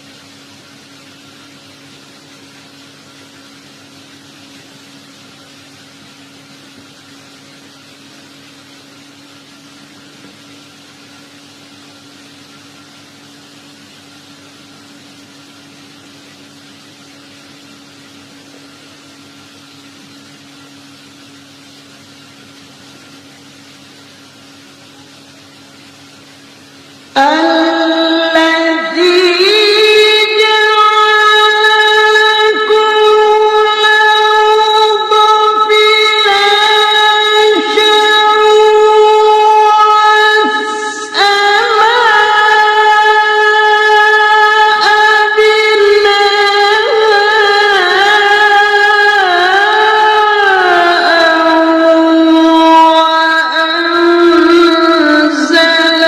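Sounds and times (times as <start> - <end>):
low electrical hum: 0.0 - 56.0.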